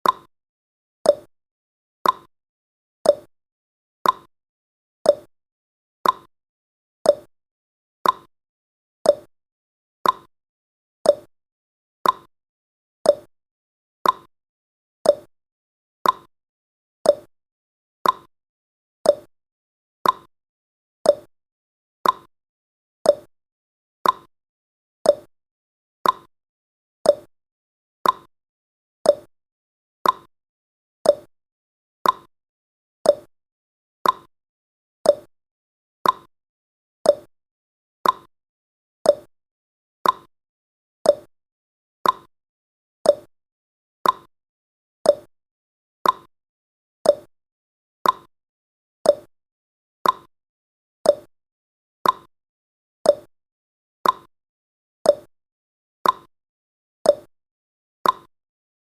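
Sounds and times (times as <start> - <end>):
timer ticking: 0.0 - 0.3, 1.1 - 1.3, 2.0 - 2.3, 3.1 - 3.3, 4.0 - 4.3, 5.1 - 5.3, 6.0 - 6.3, 7.1 - 7.3, 8.0 - 8.3, 9.1 - 9.3, 10.0 - 10.3, 11.1 - 11.3, 12.0 - 12.3, 13.1 - 13.3, 14.0 - 14.3, 15.1 - 15.3, 16.0 - 16.3, 17.1 - 17.3, 18.0 - 18.3, 19.1 - 19.3, 20.0 - 20.3, 21.1 - 21.3, 22.0 - 22.3, 23.1 - 23.3, 24.0 - 24.3, 25.1 - 25.3, 26.0 - 26.3, 27.1 - 27.3, 28.0 - 28.3, 29.1 - 29.3, 30.0 - 30.3, 31.0 - 31.3, 32.0 - 32.3, 33.1 - 33.3, 34.0 - 34.3, 35.1 - 35.3, 36.0 - 36.3, 37.1 - 37.3, 38.0 - 38.3, 39.1 - 39.3, 40.0 - 40.3, 41.1 - 41.3, 42.0 - 42.3, 43.1 - 43.3, 44.0 - 44.3, 45.1 - 45.3, 46.0 - 46.3, 47.0 - 47.3, 48.0 - 48.3, 49.1 - 49.3, 50.0 - 50.3, 51.1 - 51.3, 52.0 - 52.3, 53.1 - 53.3, 54.0 - 54.3, 55.1 - 55.3, 56.0 - 56.3, 57.1 - 57.3, 58.0 - 58.3.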